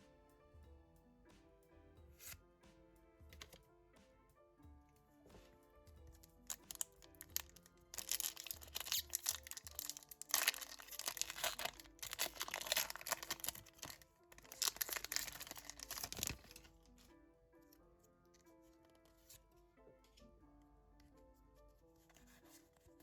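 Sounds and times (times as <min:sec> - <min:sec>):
background music: 0:00.0 - 0:23.0
foil packaging crinkling and tearing: 0:06.4 - 0:16.7.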